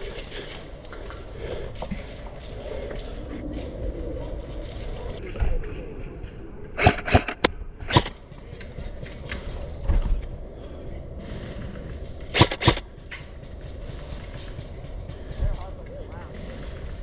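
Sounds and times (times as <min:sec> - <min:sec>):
airsoft gun shots: 0:12.4 - 0:12.8.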